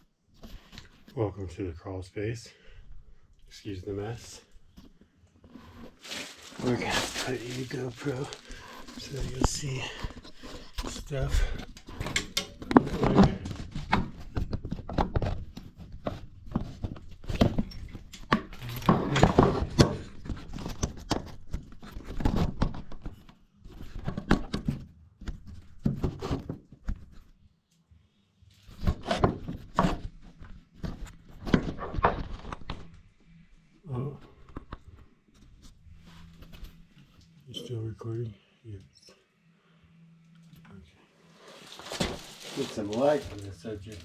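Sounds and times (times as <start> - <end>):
knocks and thuds of moving about: 4.0 - 27.3, 28.7 - 33.0, 41.6 - 44.0
gear rustling: 5.7 - 11.4, 41.5 - 44.0.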